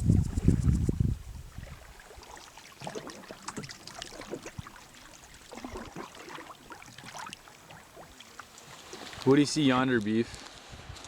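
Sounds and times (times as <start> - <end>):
water dripping and gurgling: 1.5 - 9.4
paddle splashing water: 1.5 - 11.0.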